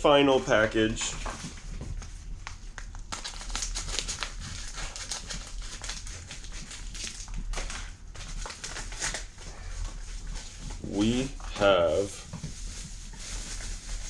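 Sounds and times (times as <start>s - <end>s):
plastic packaging crinkling: 2.6s - 9.4s.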